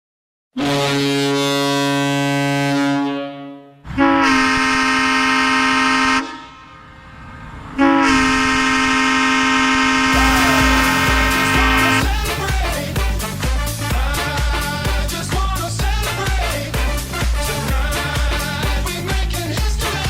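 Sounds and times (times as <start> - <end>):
goal horn blasts: 0.6 - 6.5, 7.8 - 13.6
dance music beat: 10.2 - 20.0.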